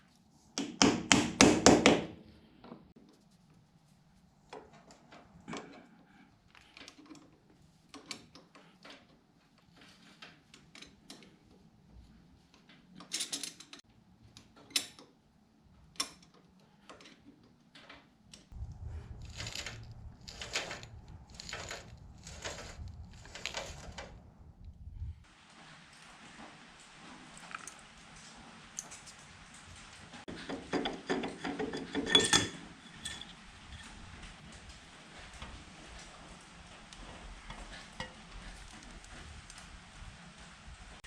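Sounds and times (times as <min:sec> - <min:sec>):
low steady rumble: 0:18.5 - 0:25.3
hand tools clinking on metal: 0:30.3 - 0:34.2.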